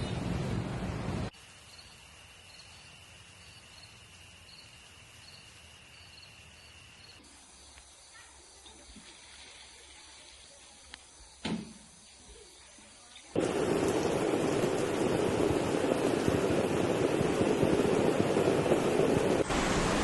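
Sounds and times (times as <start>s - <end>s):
insect high drone: 1.3s - 8.4s
insect chirps: 1.3s - 18.6s.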